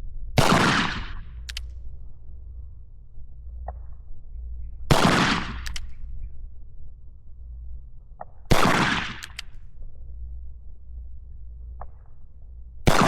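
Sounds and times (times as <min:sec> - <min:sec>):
revolver gunshots with echo: 0:00.4 - 0:01.5, 0:04.9 - 0:06.0, 0:08.5 - 0:09.4.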